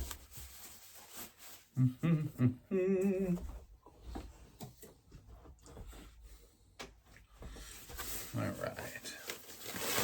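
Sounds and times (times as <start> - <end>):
person's voice: 8.3 - 9.4.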